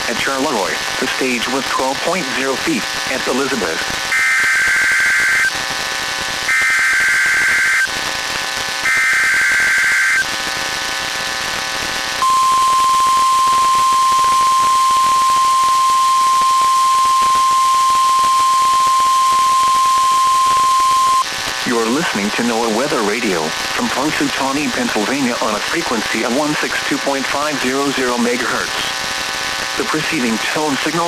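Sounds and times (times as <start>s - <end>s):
screeching digital data bursts: 3.0s - 5.6s, 8.9s - 10.3s, 12.2s - 21.3s
steady warning alarm tone: 4.1s - 5.5s, 6.5s - 8.0s, 8.9s - 10.3s, 12.2s - 21.3s.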